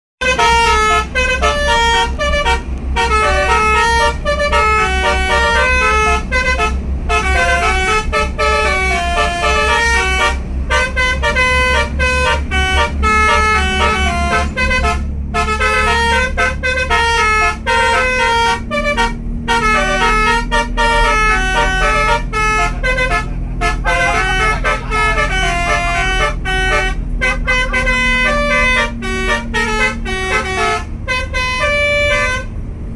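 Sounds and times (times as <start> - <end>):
air horn playing melody: 0.2 - 32.6
bus engine droning: 0.2 - 32.9.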